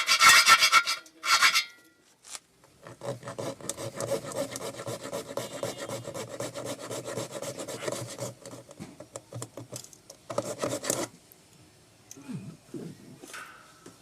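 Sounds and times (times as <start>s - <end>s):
hand saw rasping strokes: 0.0s - 1.7s, 2.8s - 8.8s, 10.3s - 11.1s.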